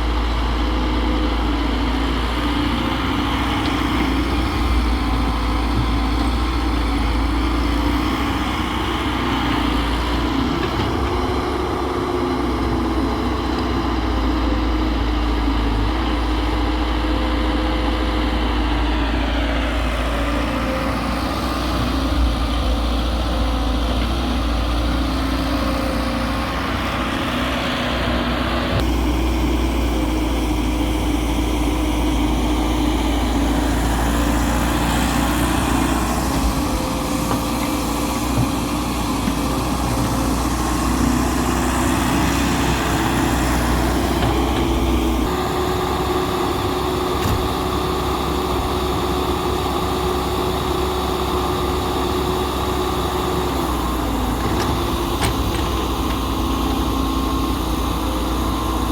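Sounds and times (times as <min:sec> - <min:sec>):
diesel engines running: 0:00.0 - 0:58.9.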